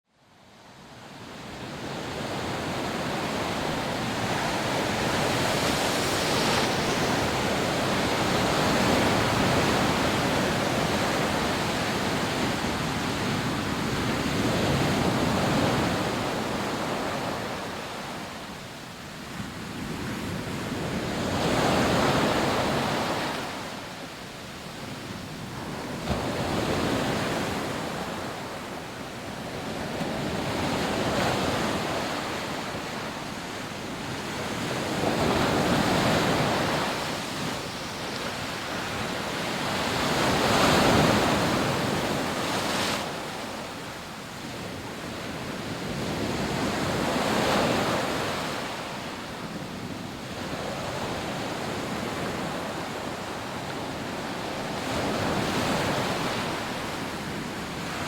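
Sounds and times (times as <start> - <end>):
waves breaking on beach: 0.6 - 58.0.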